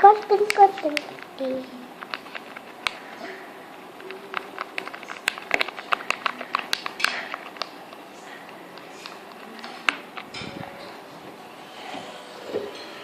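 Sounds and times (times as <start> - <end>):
stirrer clicking in slime: 0.0 - 10.4.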